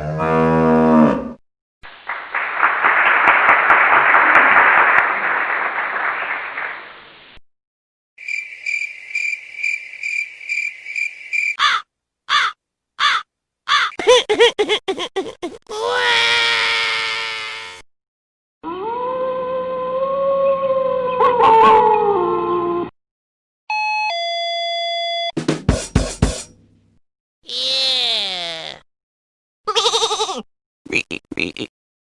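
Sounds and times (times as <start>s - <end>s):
harsh caw calls: 11.6s - 14.0s.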